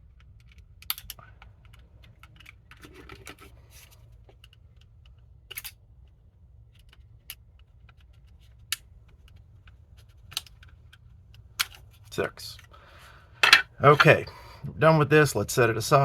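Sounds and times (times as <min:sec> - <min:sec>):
steady low hum: 0:08.8 - 0:16.0.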